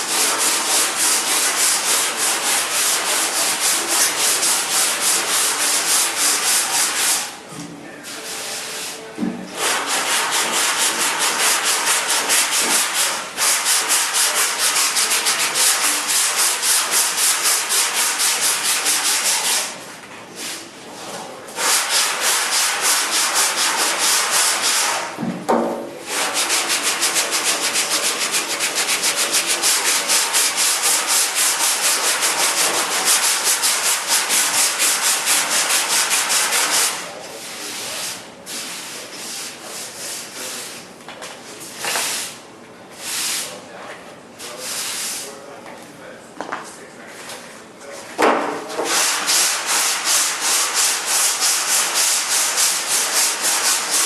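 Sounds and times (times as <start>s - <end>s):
sandpaper rubbing by hand: 0.0s - 7.3s, 9.6s - 19.8s, 21.6s - 25.2s, 26.0s - 40.8s, 43.0s - 43.6s, 44.4s - 45.3s, 48.8s - 54.0s.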